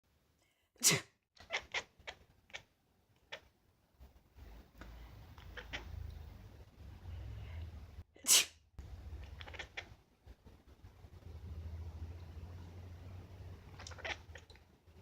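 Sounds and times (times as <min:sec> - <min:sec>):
person sneezing: 0:00.8 - 0:01.2, 0:08.2 - 0:08.6
cat making quack-like calls: 0:01.4 - 0:02.7, 0:05.4 - 0:06.0, 0:09.2 - 0:10.0, 0:13.7 - 0:14.6.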